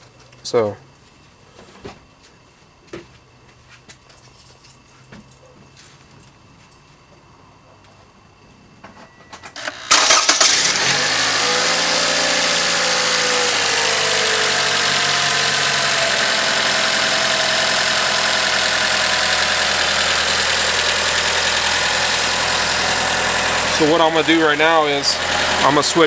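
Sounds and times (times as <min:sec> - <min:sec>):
car engine starting and idling: 0:09.6 - 0:26.0.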